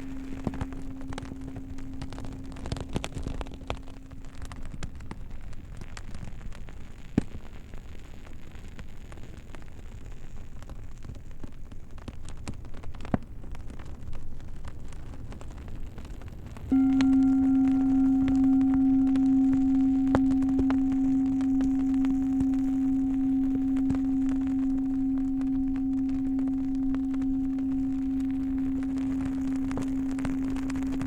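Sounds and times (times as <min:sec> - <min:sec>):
singing bowl tone: 0:00.0 - 0:05.5, 0:16.7 - 0:31.0
steady hiss: 0:16.7 - 0:31.0.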